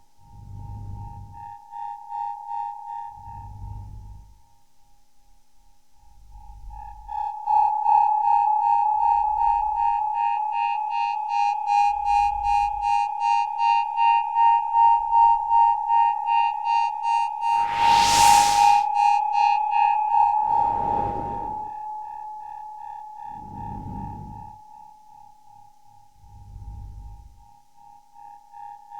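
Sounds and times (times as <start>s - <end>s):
whoosh of noise: 17.4s - 18.9s, 20.3s - 21.8s.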